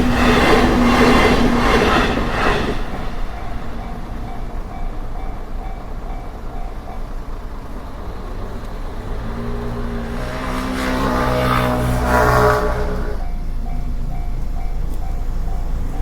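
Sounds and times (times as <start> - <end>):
train passing: 0.0 - 16.0
level crossing warning bell: 1.9 - 9.4, 12.8 - 16.0.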